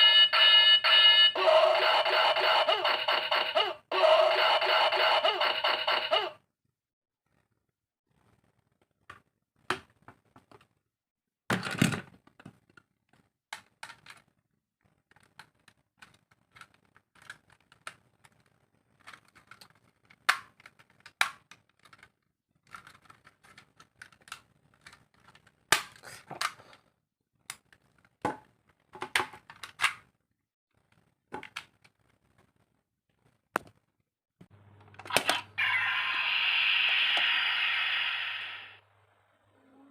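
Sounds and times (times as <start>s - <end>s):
plastic toy parts clicking: 13.5s - 14.3s, 15.1s - 26.6s, 29.0s - 30.1s.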